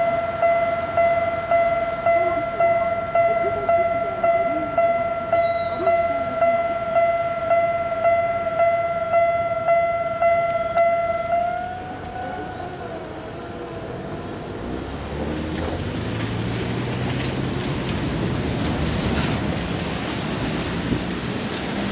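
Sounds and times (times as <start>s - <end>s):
level-crossing warning bell: 0.0s - 15.3s.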